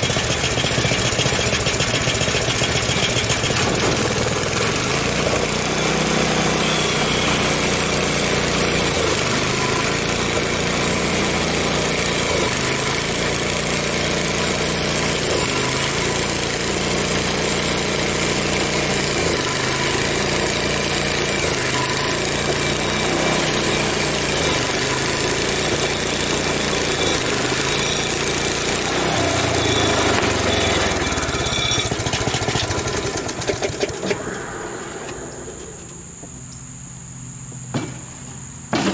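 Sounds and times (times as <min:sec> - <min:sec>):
sawmill engine running under load: 0:00.0 - 0:38.9
sharp knocks: 0:37.7 - 0:38.1.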